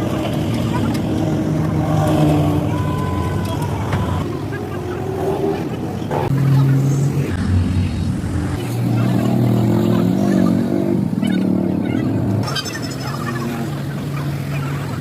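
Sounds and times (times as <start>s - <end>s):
voices: 0.0s - 15.0s.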